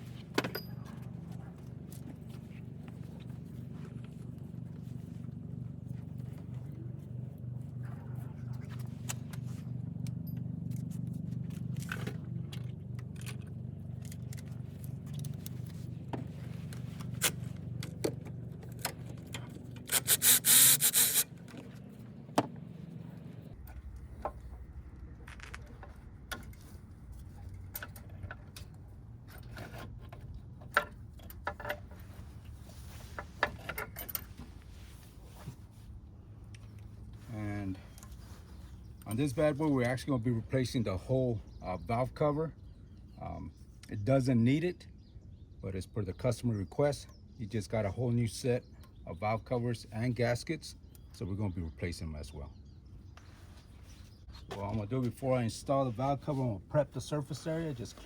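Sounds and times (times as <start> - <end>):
hand tools clicking and scraping: 16.4 - 21.9
loud buzzing burst: 19.9 - 21.3.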